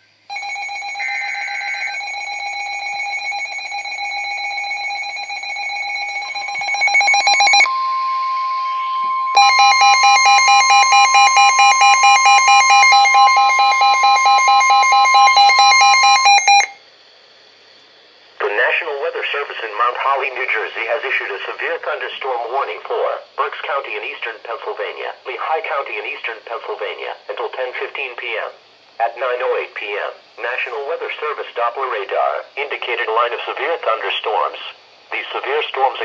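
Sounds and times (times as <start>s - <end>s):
rapidly pulsing alarm: 0.3s - 16.8s
steady electronic alarm tone: 0.3s - 16.8s
weather alert tone: 0.4s - 16.8s
buzzy data burst: 3.8s - 16.8s.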